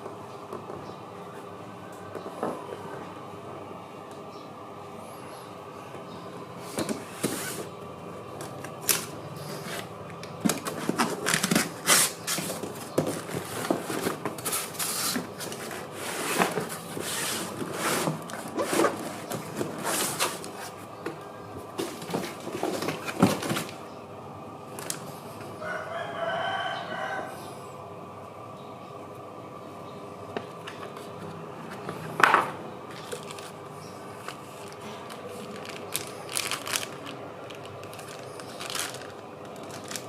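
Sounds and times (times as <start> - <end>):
rustling handling noise: 6.6 - 23.9, 30.4 - 40.0
rooster crowing: 25.6 - 27.7.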